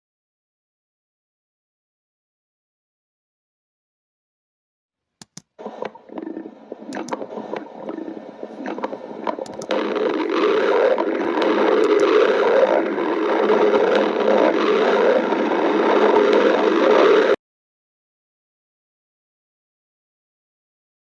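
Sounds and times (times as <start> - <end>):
stomach growling and gurgling: 5.6 - 17.4.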